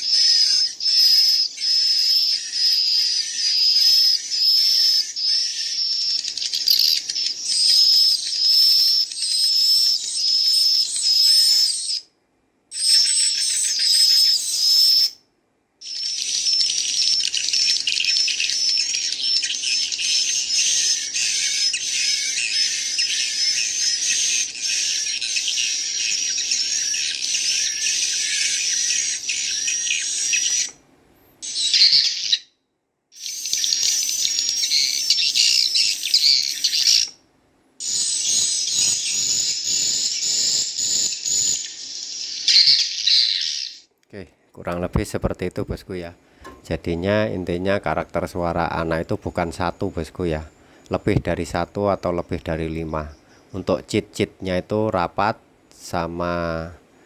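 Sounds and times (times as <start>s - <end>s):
adult bird calls: 0.0s - 12.0s
bird chicks chirping from speaker: 0.0s - 12.0s, 12.7s - 15.2s, 15.8s - 30.8s, 33.2s - 37.2s, 37.8s - 43.8s, 44.6s - 56.8s.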